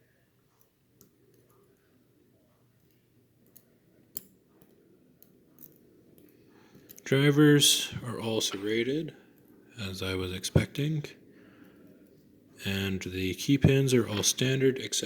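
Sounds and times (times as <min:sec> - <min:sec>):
small metal parts clicking: 0:02.8 - 0:07.0.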